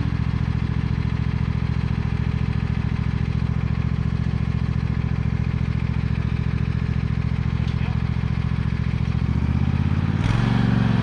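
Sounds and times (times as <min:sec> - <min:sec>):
small lawnmower engine idling: 0:00.0 - 0:11.0.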